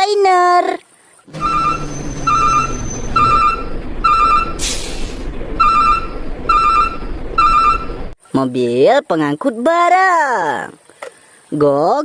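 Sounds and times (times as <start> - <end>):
low engine rumble: 1.3 - 8.2
truck reversing alarm beeping: 1.3 - 8.2
air brake hiss: 4.6 - 5.3.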